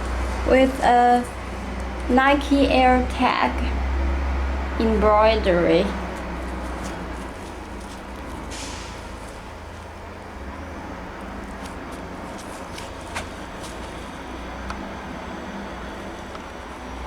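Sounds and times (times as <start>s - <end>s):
low background rumble: 0.0s - 17.0s
short rustle: 6.0s - 10.1s, 11.3s - 14.5s.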